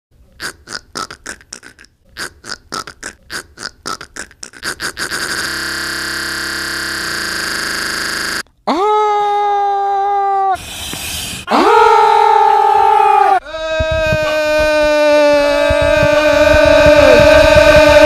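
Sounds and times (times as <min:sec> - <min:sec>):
person making mouth sound effects: 0:00.4 - 0:05.9, 0:13.5 - 0:18.0
held buzzing vocal note: 0:04.6 - 0:08.4, 0:13.4 - 0:18.0.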